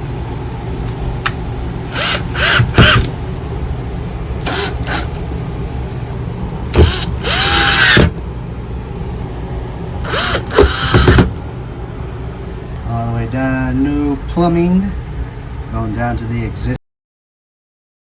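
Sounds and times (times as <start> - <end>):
cordless drill driving screws: 1.9 - 3.1, 4.4 - 5.1, 6.7 - 8.2, 10.0 - 11.3.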